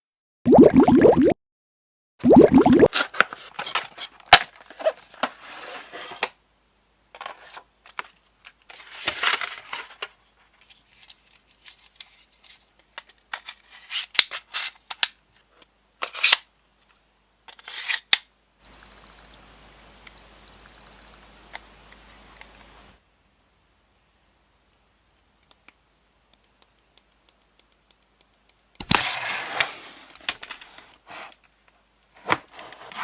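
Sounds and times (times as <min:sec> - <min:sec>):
plastic clicks and snaps: 0:25.4 - 0:29.0.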